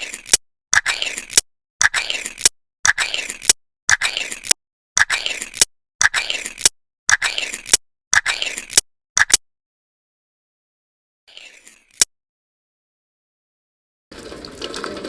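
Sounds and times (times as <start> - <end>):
scraping rasp: 0.0 - 8.8, 11.3 - 12.1
sharp click: 0.2 - 9.4.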